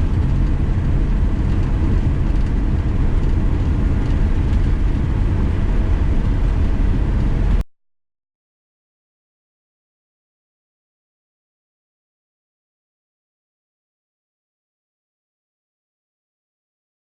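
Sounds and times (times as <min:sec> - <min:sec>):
vehicle engine rumbling: 0:00.0 - 0:07.6.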